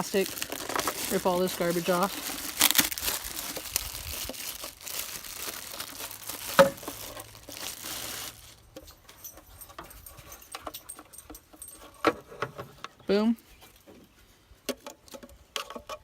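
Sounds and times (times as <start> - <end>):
plastic wrapping ripped and crumpled: 0.0 - 8.7.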